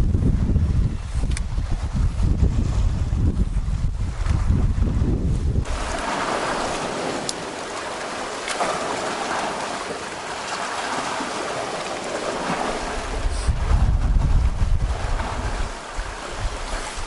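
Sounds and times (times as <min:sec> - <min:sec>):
sea water washing over rocks: 0:05.6 - 0:17.0.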